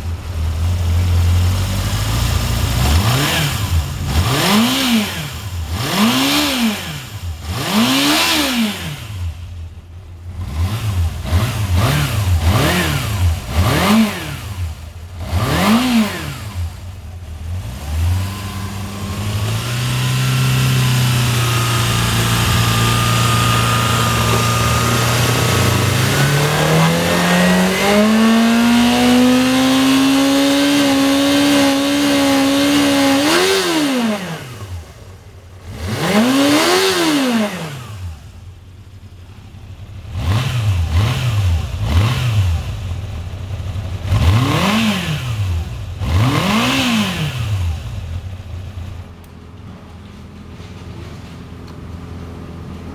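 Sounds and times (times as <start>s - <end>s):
motorcycle engine revving: 0.0s - 52.9s.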